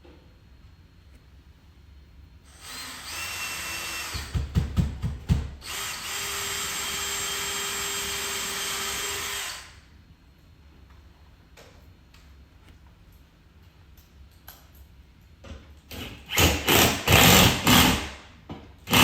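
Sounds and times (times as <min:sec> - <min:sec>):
power drill whining: 0:02.5 - 0:04.4, 0:05.6 - 0:09.8, 0:16.3 - 0:18.1
heavy knocks: 0:04.1 - 0:05.6.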